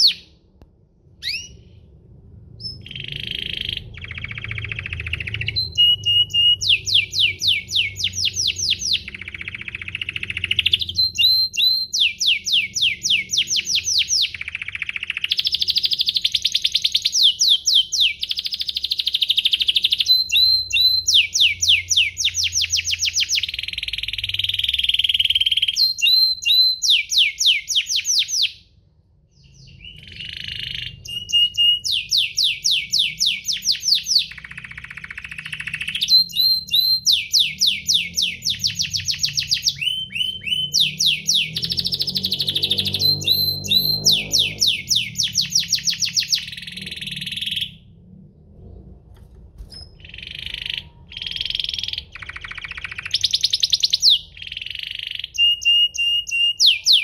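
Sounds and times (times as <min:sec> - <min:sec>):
canary singing trills: 0:00.0 - 0:00.5, 0:01.1 - 0:01.9, 0:02.5 - 0:48.1, 0:49.6 - 0:57.0.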